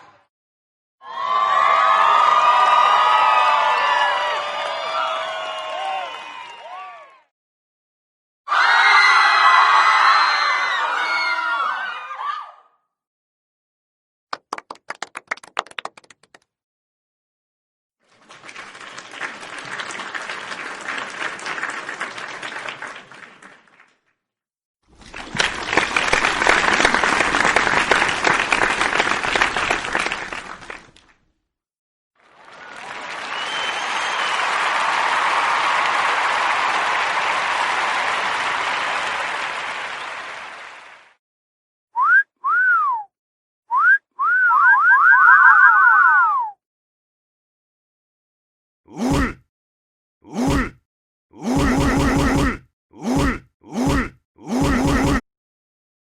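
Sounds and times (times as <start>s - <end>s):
crowd applause: 1.1s - 7.2s, 14.4s - 16.3s, 18.0s - 24.0s, 24.9s - 31.1s, 32.2s - 41.2s
whistle sound effect: 42.0s - 43.1s, 43.7s - 46.6s.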